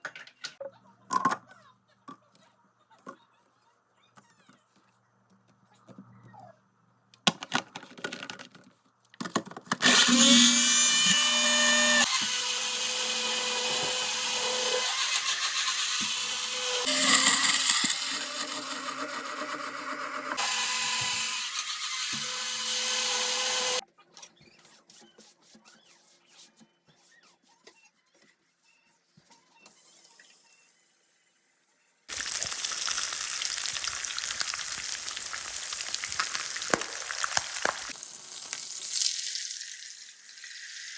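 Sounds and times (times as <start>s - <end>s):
electric blender motor: 9.8s - 23.8s, 32.1s - 34.5s
food frying in hot oil: 32.1s - 40.9s.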